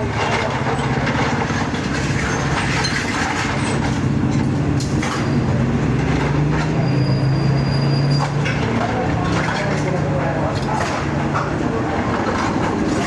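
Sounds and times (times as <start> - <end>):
clicks and rattles: 0.0 - 6.8, 8.1 - 13.0
vehicle engine and road noise: 0.0 - 13.0.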